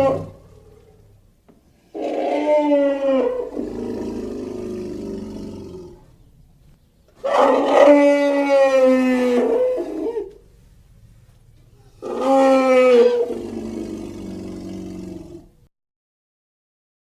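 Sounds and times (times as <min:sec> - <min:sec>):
bear roaring: 0:00.0 - 0:01.2, 0:01.8 - 0:06.1, 0:07.2 - 0:10.4, 0:11.8 - 0:15.6.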